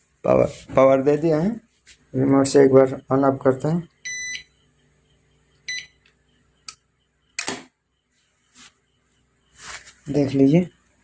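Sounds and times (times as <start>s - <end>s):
short high buzzer beeps: 4.0s - 4.6s, 5.7s - 6.0s
sharp click: 6.0s - 7.7s.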